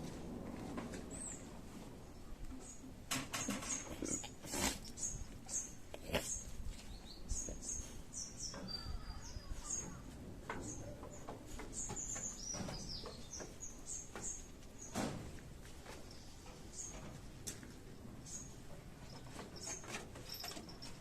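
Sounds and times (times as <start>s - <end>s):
small birds chirping: 2.1s - 15.0s, 16.0s - 17.2s.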